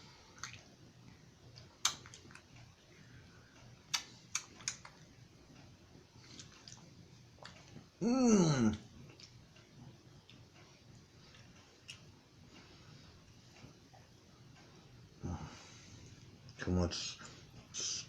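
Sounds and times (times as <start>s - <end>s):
person humming mmm while chewing: 7.4s - 9.3s.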